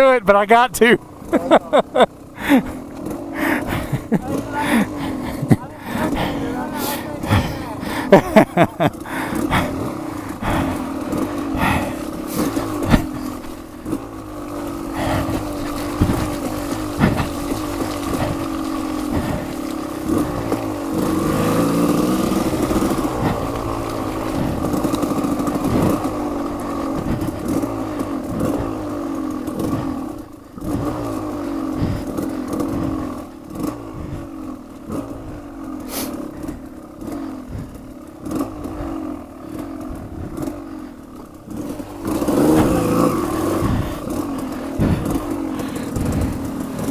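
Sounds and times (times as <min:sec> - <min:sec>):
dirt bike engine revving: 0:00.0 - 0:46.9
bike knocking and clattering: 0:11.1 - 0:20.8.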